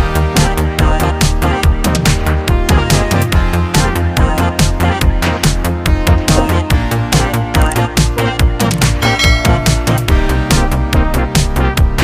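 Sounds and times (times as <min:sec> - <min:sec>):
drum and bass music: 0:00.0 - 0:12.0.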